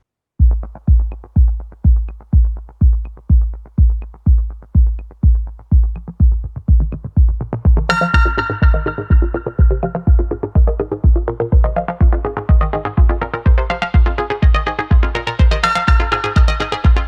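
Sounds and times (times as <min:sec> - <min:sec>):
electronic music with kick drum: 0:00.4 - 0:17.0
bright synth: 0:07.9 - 0:17.0.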